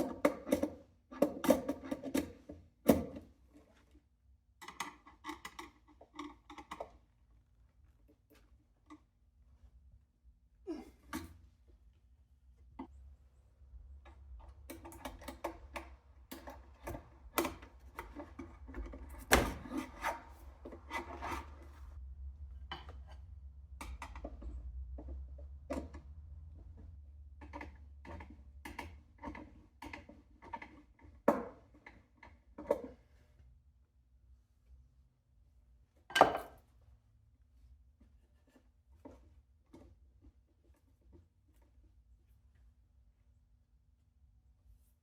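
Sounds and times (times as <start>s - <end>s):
rubbing and scraping: 16.6s - 22.0s.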